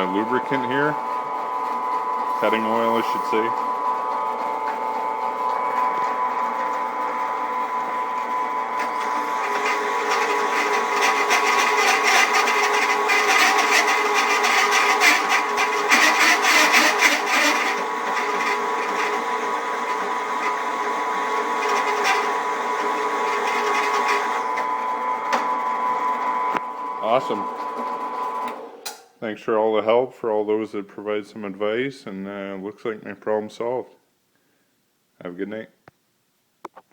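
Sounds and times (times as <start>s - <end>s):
drill press whining: 0.0s - 29.0s
drill bit cutting metal: 5.5s - 24.6s.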